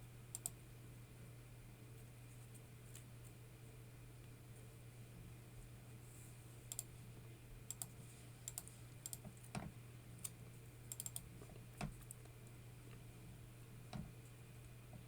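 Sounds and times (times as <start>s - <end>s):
low electrical hum: 0.0s - 15.0s
keyboard typing clicks: 0.3s - 0.6s, 7.7s - 7.9s, 8.5s - 9.2s, 10.2s - 12.2s.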